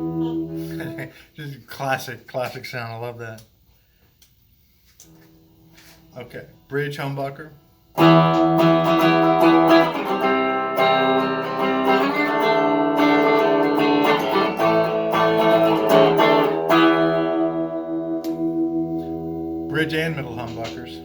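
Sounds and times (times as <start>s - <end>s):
electric guitar strumming chords: 0.0s - 1.2s, 7.9s - 21.0s.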